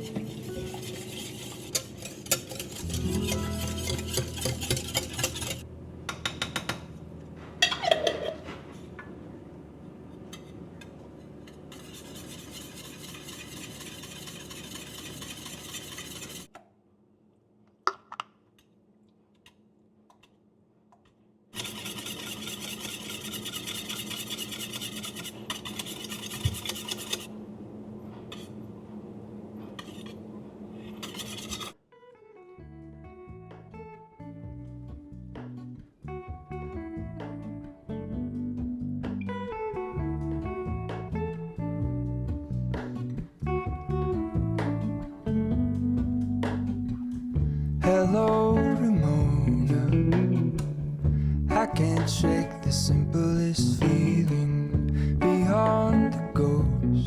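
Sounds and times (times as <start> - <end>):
utensils clinking and scraping: 0.0 - 5.6, 30.9 - 31.8.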